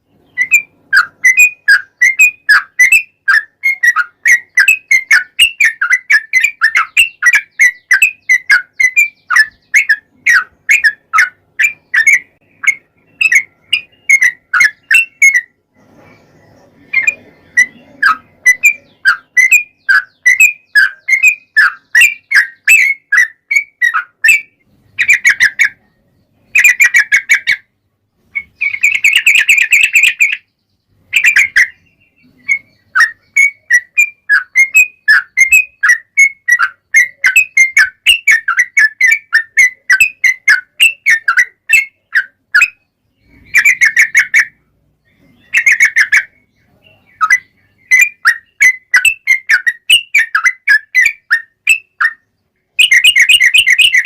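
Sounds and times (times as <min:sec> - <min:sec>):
bird song bubbly whistles: 0:00.3 - 0:15.5, 0:52.8 - 0:54.0.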